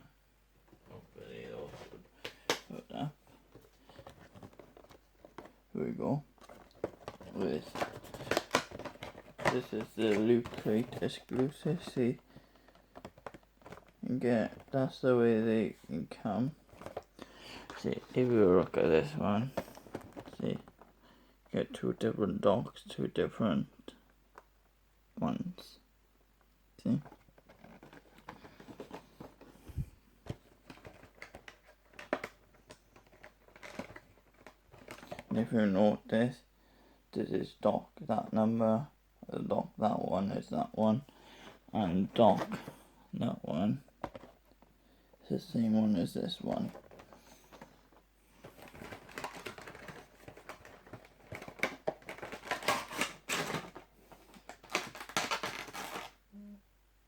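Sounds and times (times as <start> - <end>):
clicks and taps handling boxes: 3.5 - 5.6, 6.4 - 14.7, 16.7 - 18.8, 19.5 - 21.0, 27.0 - 35.3, 43.9 - 44.7, 46.5 - 55.7.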